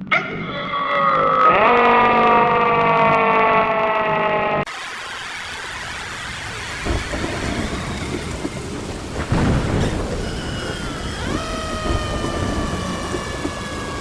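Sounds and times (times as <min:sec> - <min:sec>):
loud burst: 0:04.7 - 0:14.0
rumbling hiss: 0:04.7 - 0:14.0
siren tone: 0:09.9 - 0:14.0.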